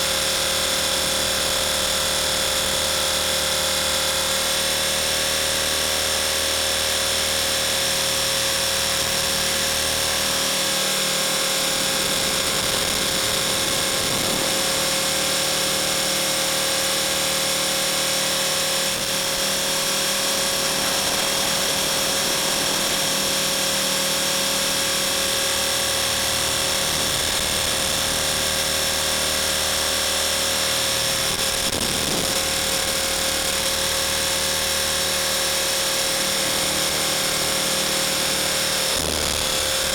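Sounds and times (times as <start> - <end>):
rc helicopter motor whine: 0.0 - 39.9
rotor hum: 0.0 - 39.9.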